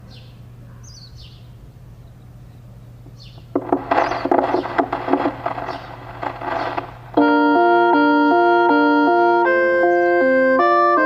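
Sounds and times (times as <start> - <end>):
small birds chirping: 0.0 - 7.1
low steady hum: 0.0 - 8.4
harsh irregular choppy sound: 3.4 - 7.2.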